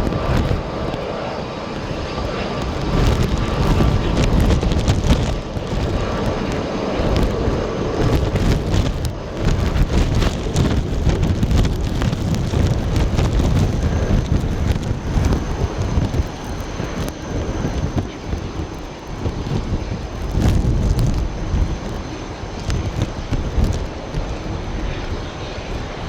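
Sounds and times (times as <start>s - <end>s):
jet engines rumbling: 0.0s - 26.0s
wind buffeting microphone: 0.0s - 26.0s.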